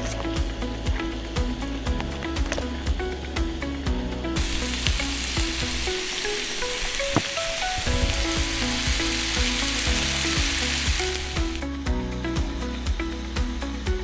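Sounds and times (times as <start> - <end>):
background music with melody: 0.0 - 14.0
food sizzling in a frying pan: 4.4 - 11.6.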